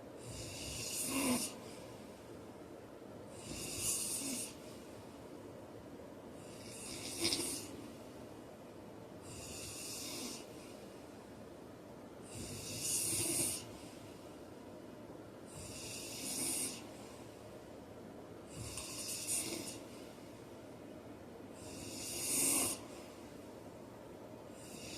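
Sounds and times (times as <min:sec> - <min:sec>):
man snoring: 0:00.2 - 0:01.6, 0:03.4 - 0:04.6, 0:06.4 - 0:07.7, 0:09.3 - 0:10.5, 0:12.3 - 0:13.7, 0:15.5 - 0:16.8, 0:18.6 - 0:19.8, 0:21.6 - 0:22.8, 0:24.6 - 0:24.9.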